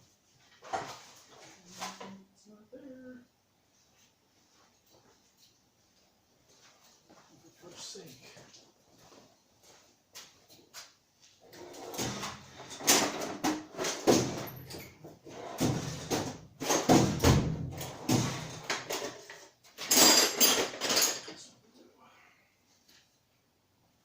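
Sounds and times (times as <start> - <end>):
hand tools clattering in drawer: 17.8 - 21.4.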